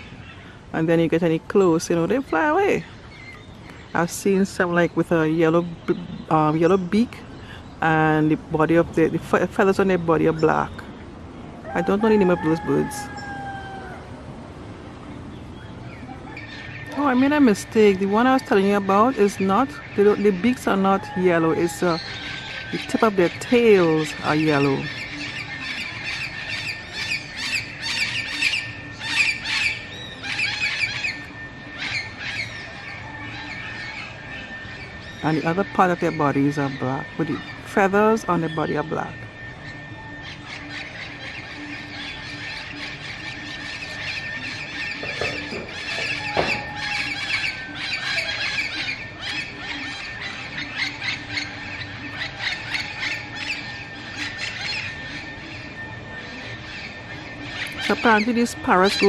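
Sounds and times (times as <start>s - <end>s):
parrots squawking: 11.6s - 14.1s, 15.9s - 59.0s.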